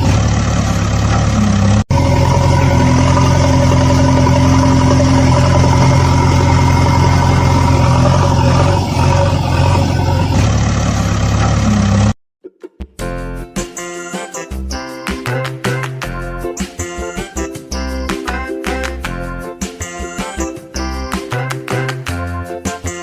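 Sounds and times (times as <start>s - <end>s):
vehicle engine running: 0.0s - 12.2s.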